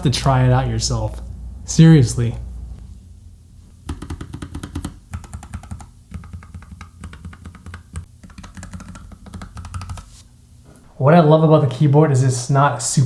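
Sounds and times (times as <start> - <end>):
fast typing on keyboard: 3.8 - 10.2.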